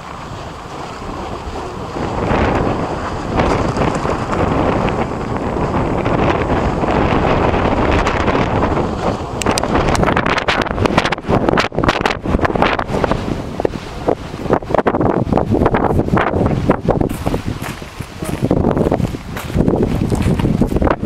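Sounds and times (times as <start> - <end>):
sharp crackles: 0.0 - 11.0, 15.8 - 20.9
wind buffeting microphone: 0.0 - 21.0.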